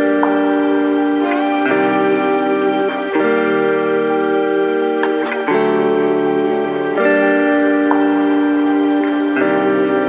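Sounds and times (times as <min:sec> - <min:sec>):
slow relaxation music: 0:00.0 - 0:10.0.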